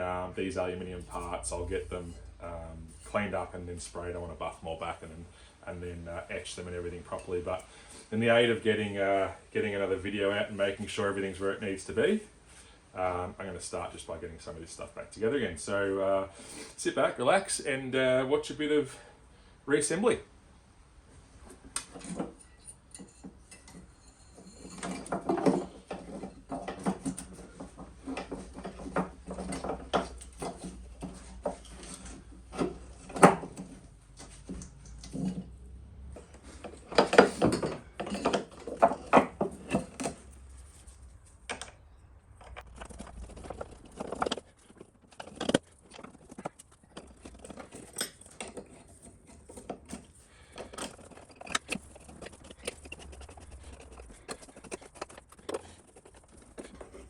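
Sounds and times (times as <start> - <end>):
metal parts and tools clinking: 21.7 - 57.0.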